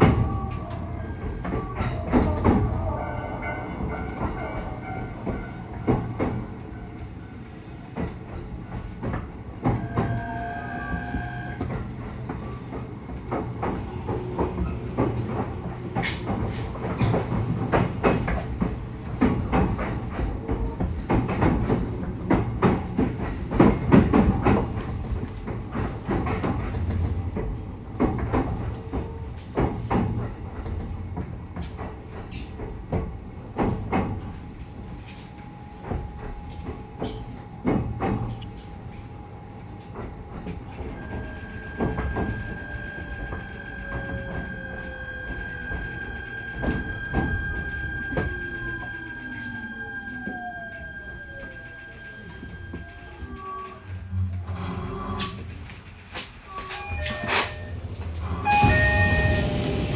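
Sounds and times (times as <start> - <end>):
wheels clattering on rail joints: 0.0 - 49.6, 51.0 - 59.9
electric train rumble: 0.0 - 59.9
electric train inverter whine: 34.1 - 59.9.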